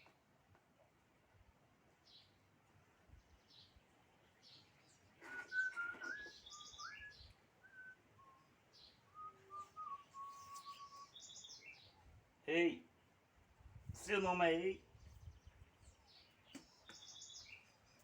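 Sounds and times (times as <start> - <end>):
small birds chirping: 1.9 - 18.0
whistled notes: 5.2 - 8.5, 9.1 - 11.2.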